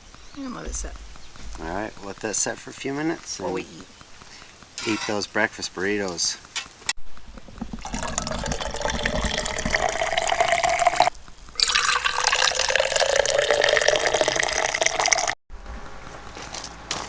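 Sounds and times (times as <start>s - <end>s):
coffee pouring into mug: 7.3s - 15.4s.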